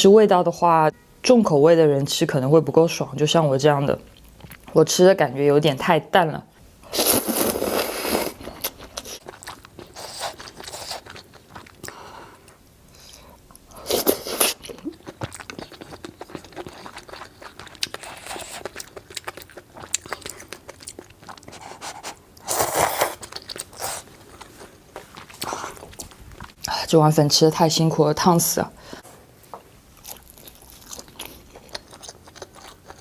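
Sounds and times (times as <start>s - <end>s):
person chewing noodles: 6.8s - 26.7s, 30.0s - 33.0s.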